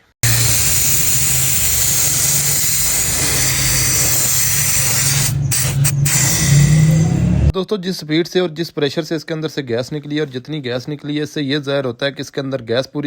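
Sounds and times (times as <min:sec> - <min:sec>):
gas hissing from a valve: 0:00.0 - 0:07.1.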